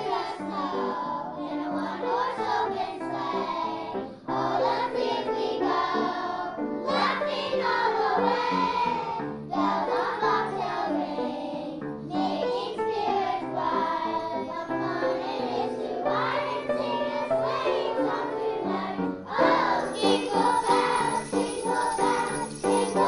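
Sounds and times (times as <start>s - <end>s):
children's choir singing: 0.0s - 23.0s
instrumental accompaniment: 11.9s - 23.0s.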